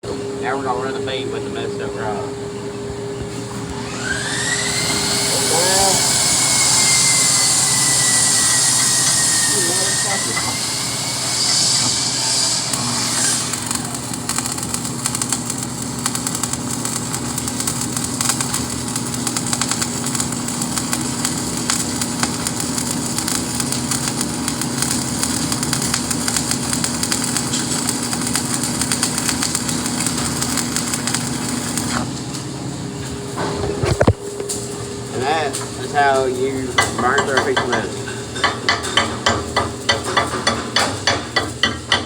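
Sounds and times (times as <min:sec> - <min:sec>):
constant hum: 0:00.0 - 0:04.5, 0:31.8 - 0:41.9
welding arc crackling and sizzling: 0:03.5 - 0:42.0.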